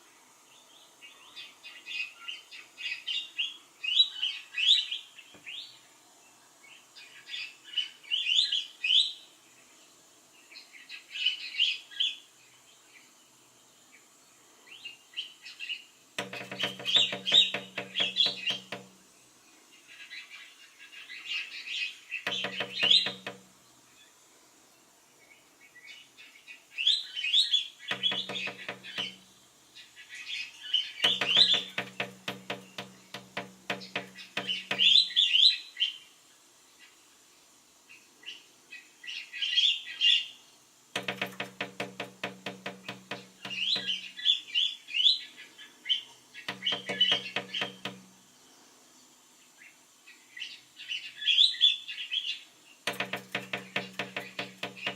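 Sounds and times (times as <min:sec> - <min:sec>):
rapid rattle of taps: 0:16.2 - 0:19.0, 0:22.3 - 0:23.6, 0:27.9 - 0:29.3, 0:31.0 - 0:35.0, 0:41.0 - 0:44.1, 0:46.5 - 0:48.2, 0:52.9 - 0:54.9.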